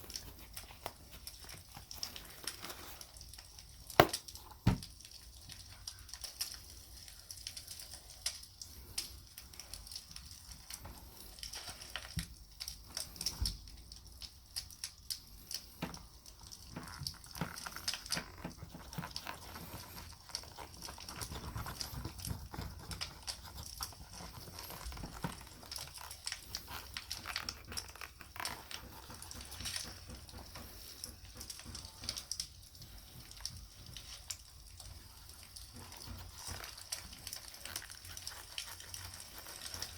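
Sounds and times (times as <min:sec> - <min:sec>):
soft rubbing on leather: 0:16.8 - 0:32.2, 0:35.0 - 0:39.9.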